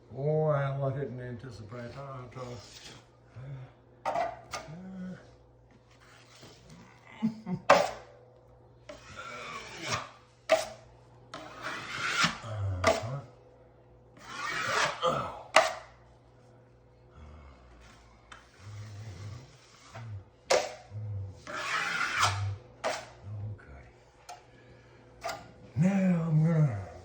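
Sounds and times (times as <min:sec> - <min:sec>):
drywall knife scraping compound: 0:02.4 - 0:03.1, 0:08.9 - 0:13.2, 0:14.2 - 0:15.9, 0:18.3 - 0:23.3.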